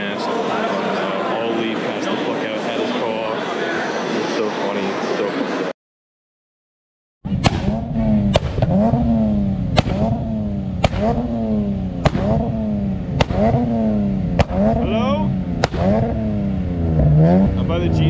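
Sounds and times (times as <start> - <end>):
car engine revving: 7.3 - 18.0.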